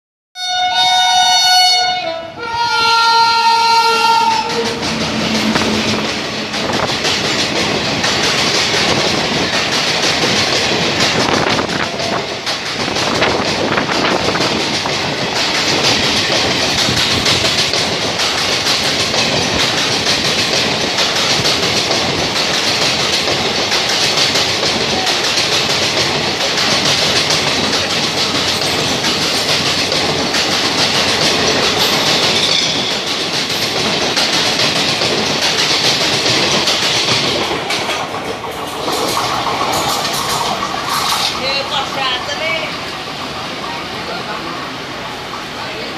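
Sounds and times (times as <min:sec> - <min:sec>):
train horn blasts: 0:00.4 - 0:06.5
train wheels clattering: 0:02.8 - 0:45.8.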